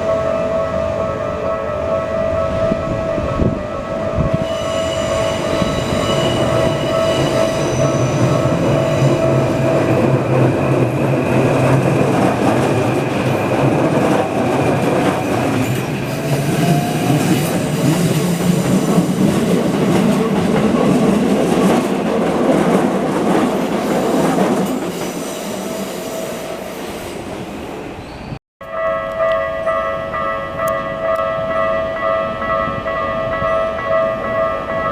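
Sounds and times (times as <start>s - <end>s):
electric train passing: 0.0s - 34.9s.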